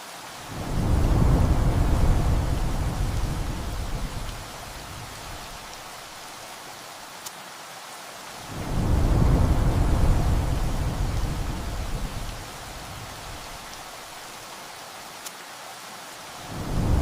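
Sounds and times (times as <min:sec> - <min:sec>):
heavy rain: 0:00.0 - 0:17.0
thunder rumbling: 0:00.5 - 0:05.8, 0:08.5 - 0:13.9, 0:16.5 - 0:17.0.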